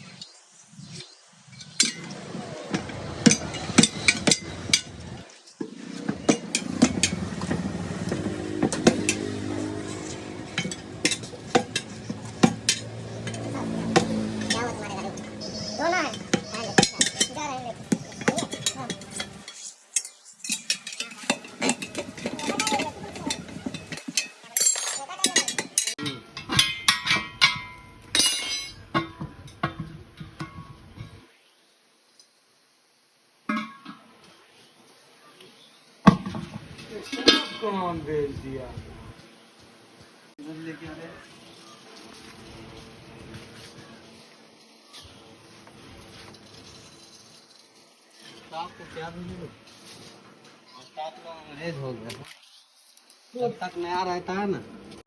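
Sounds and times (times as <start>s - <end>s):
steady low hum: 6.0s - 19.5s
tools clinking on steel rim: 8.6s - 31.1s.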